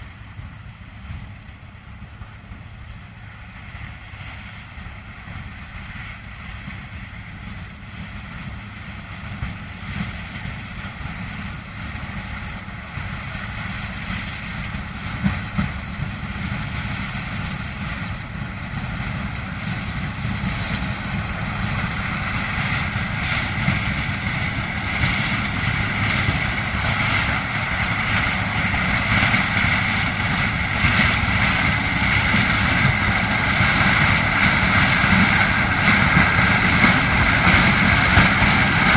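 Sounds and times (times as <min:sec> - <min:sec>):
harvester engine rumbling: 0:00.0 - 0:38.9.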